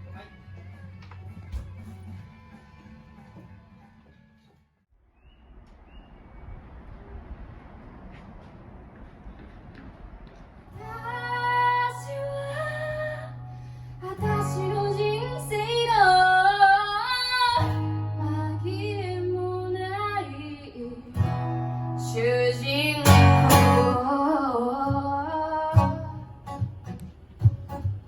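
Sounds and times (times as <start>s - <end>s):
woman singing: 10.8s - 13.4s, 14.0s - 21.3s, 22.0s - 26.3s
acoustic guitar chords: 10.8s - 20.2s, 21.2s - 28.0s.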